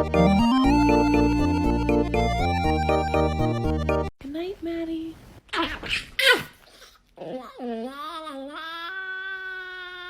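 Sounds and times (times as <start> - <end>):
person sneezing: 5.6 - 7.0.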